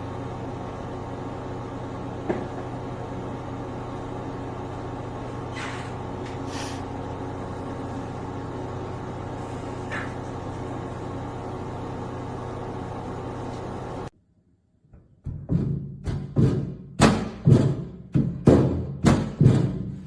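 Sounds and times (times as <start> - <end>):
microwave oven humming: 0.0 - 14.1.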